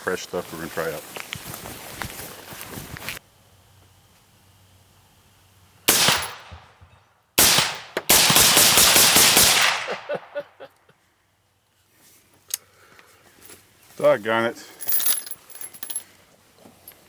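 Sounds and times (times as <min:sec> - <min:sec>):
gunshots: 0:05.9 - 0:06.4, 0:07.4 - 0:09.9
rapid gunfire cracks: 0:05.9 - 0:06.5, 0:07.4 - 0:09.9.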